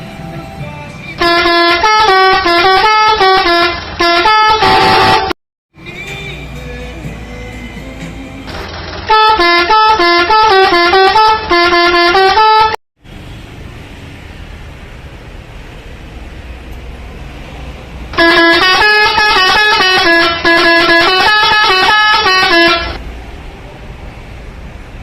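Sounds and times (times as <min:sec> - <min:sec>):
multi-tone air horn tune: 0:01.2 - 0:05.4, 0:09.1 - 0:12.8, 0:18.2 - 0:23.0.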